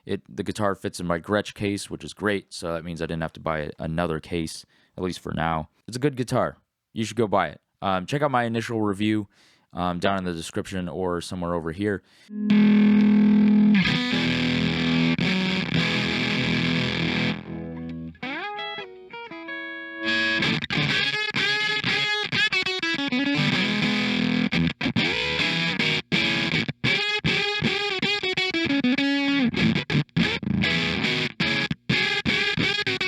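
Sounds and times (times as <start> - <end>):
distorted electric guitar: 12.3 - 33.0.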